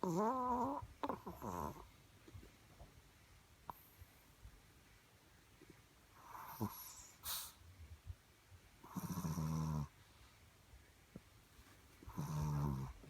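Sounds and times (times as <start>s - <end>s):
pet snoring: 0.0s - 1.9s, 6.2s - 7.5s, 8.8s - 10.0s, 12.0s - 13.0s.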